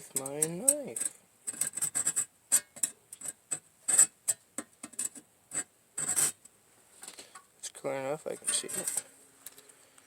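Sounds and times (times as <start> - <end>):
knife scratching sheet metal: 0.1 - 6.4, 8.4 - 9.1.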